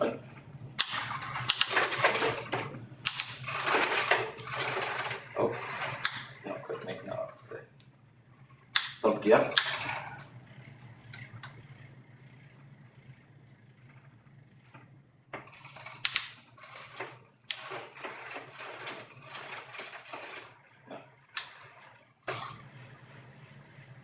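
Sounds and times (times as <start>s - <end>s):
chain rattling over sprockets: 0.2s - 24.0s
bicycle shifter clicks: 10.6s - 11.6s.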